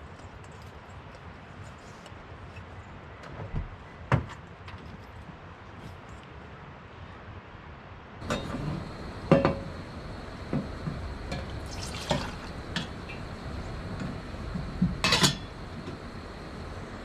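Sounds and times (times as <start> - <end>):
objects knocking and clinking: 8.2 - 16.5.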